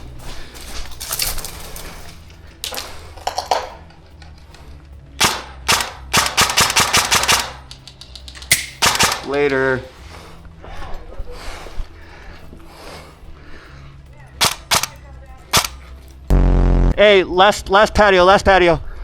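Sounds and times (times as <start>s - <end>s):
airsoft guns firing: 5.2s - 7.8s, 8.5s - 9.4s, 14.4s - 15.9s.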